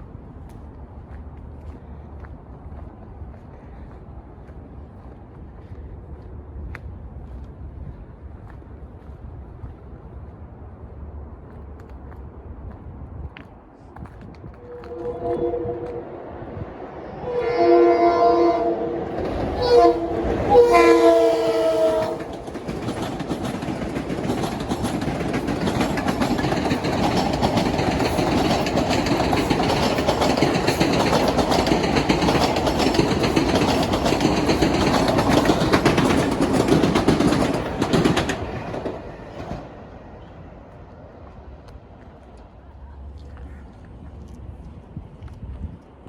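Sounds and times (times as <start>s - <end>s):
train wheel and rail noise: 0.0s - 46.0s
train horn blasts: 14.6s - 16.4s, 17.0s - 22.4s.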